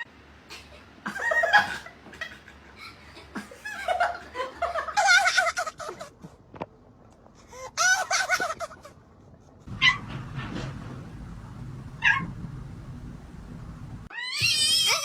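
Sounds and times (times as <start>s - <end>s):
people laughing: 1.1s - 6.4s, 7.8s - 9.0s.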